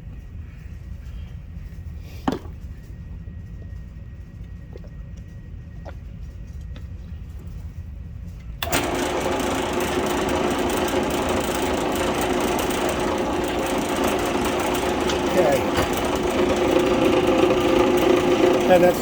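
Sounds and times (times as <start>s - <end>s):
drill press motor running: 8.6s - 19.0s.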